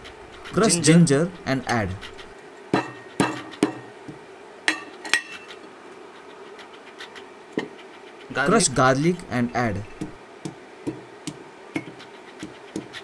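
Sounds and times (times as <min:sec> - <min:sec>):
pounding knocks: 0:02.7 - 0:04.9, 0:09.9 - 0:13.0.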